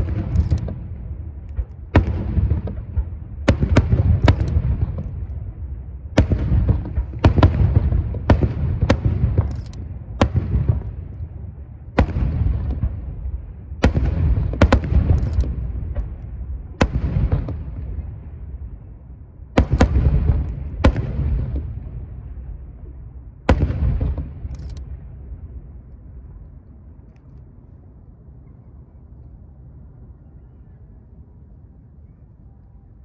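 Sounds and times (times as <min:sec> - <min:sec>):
firework shells bursting: 0:00.0 - 0:05.3
heavy low rumble: 0:00.0 - 0:32.1.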